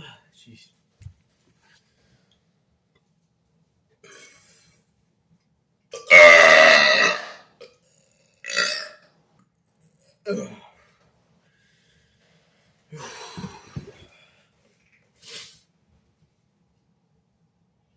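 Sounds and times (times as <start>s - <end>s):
man burping loudly: 6.0s - 7.7s, 8.4s - 9.0s.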